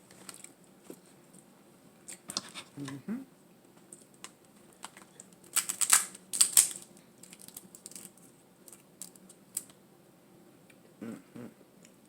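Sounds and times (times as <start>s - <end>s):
sharp food cracks and crackles: 3.9s - 9.8s.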